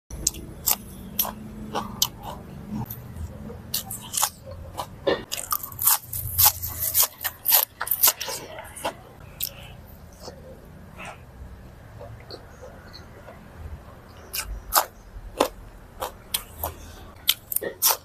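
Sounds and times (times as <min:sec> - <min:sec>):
person chewing crunchy food: 0:00.1 - 0:11.2, 0:14.1 - 0:18.0.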